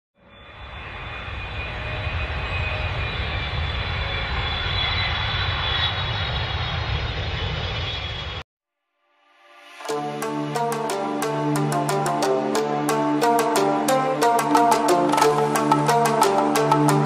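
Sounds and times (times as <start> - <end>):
airplane engine: 0.2 - 8.4
faint high whine: 0.2 - 8.4.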